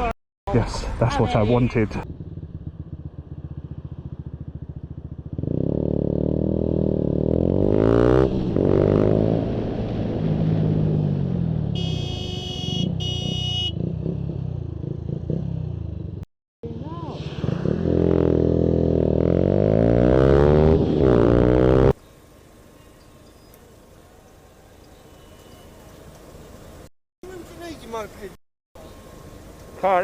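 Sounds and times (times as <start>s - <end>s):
motorcycle engine accelerating: 1.9s - 11.8s, 13.0s - 22.0s
horn beeping: 11.7s - 13.9s.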